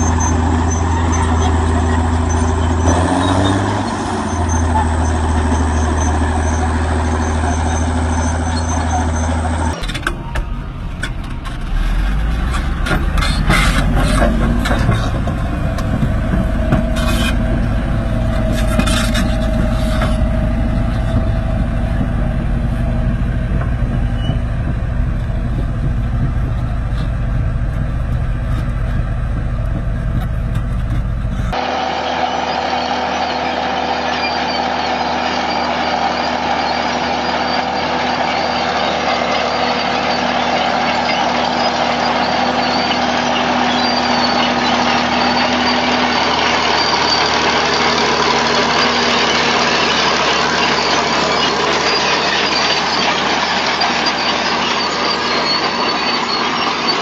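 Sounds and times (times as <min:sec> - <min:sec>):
metal clanks: 0:00.0 - 0:31.6
heavy diesel engines running: 0:00.0 - 0:57.0.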